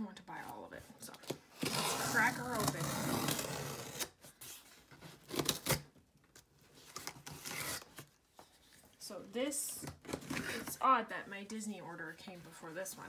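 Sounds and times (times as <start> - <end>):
cardboard box being torn open: 5.2 - 5.9.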